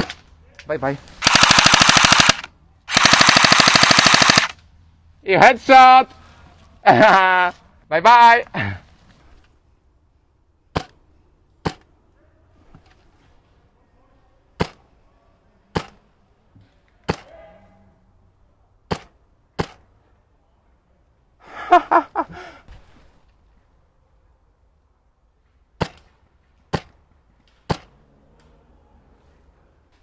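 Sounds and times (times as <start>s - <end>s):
airsoft rifle shots: 1.2s - 4.6s, 18.9s - 19.8s, 27.6s - 27.9s.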